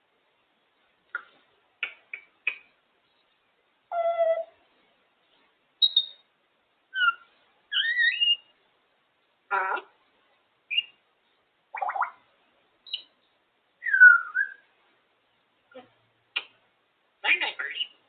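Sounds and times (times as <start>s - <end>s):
parrot whistles: 7.0s - 8.4s.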